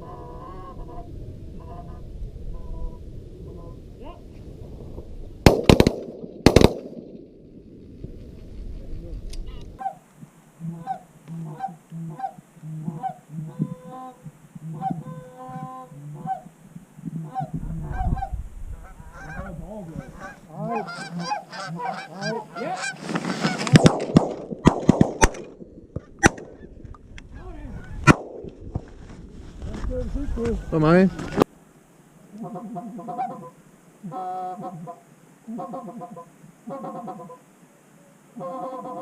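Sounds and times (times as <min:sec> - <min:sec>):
shotgun shots: 0:05.4 - 0:07.3, 0:23.5 - 0:25.6, 0:26.2 - 0:26.6, 0:28.0 - 0:28.5
geese honking: 0:10.6 - 0:16.5, 0:17.2 - 0:23.8, 0:32.4 - 0:37.4, 0:38.4 - 0:39.0.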